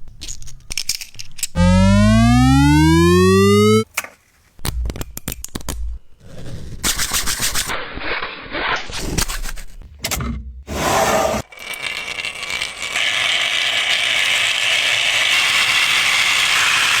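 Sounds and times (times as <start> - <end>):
rising pitched tone: 1.6 - 3.8.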